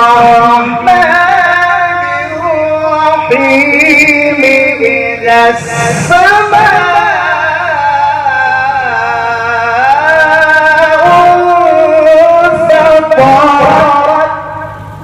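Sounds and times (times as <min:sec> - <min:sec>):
man chanting melodic recitation: 0:00.0 - 0:14.8.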